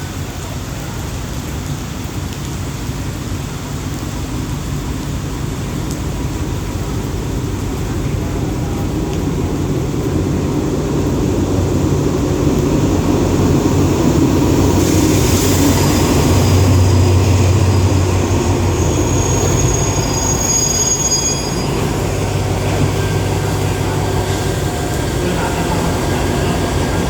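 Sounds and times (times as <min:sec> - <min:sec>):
train rolling through station: 0:00.0 - 0:27.0
low locomotive engine hum: 0:04.2 - 0:27.0
high wheel or brake squeals: 0:15.8 - 0:22.5.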